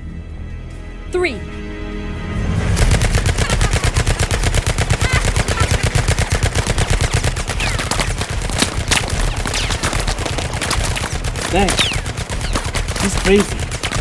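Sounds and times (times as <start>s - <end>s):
rapid overlapping gunshots: 2.8s - 14.0s.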